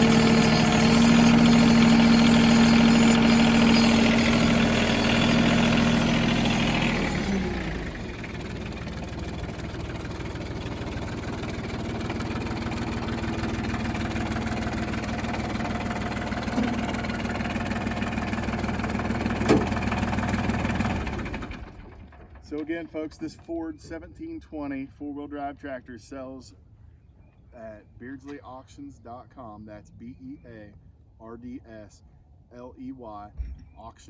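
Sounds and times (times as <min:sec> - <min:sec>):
tractor diesel engine: 0:00.0 - 0:24.2.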